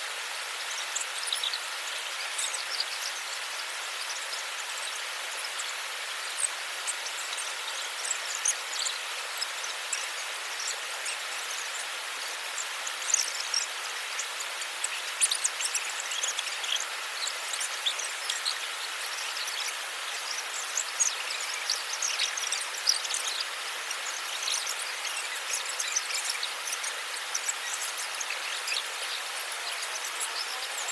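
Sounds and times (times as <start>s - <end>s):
steady rushing hiss: 0.0s - 30.9s
high-pitched ticks and chirps: 6.4s - 30.9s.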